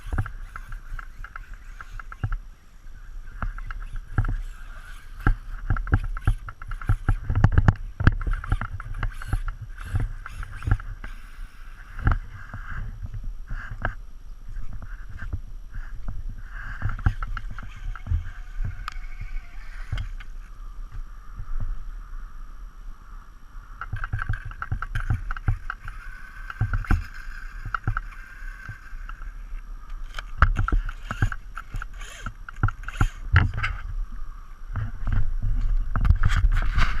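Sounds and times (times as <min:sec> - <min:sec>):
sharp clicks and knocks: 0:00.0 - 0:02.4, 0:05.2 - 0:11.2, 0:23.8 - 0:33.9
electric motor whine: 0:00.0 - 0:37.0.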